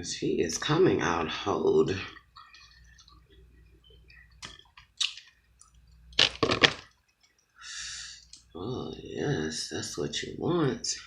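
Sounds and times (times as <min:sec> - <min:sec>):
crab shell crackling and snapping: 0:04.4 - 0:05.3.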